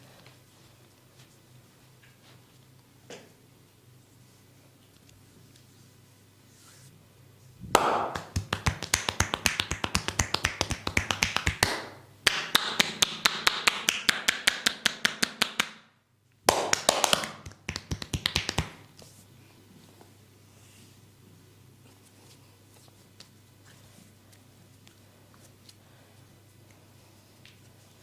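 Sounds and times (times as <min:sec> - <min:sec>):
hands striking body rapidly: 0:07.7 - 0:15.8, 0:16.5 - 0:18.8.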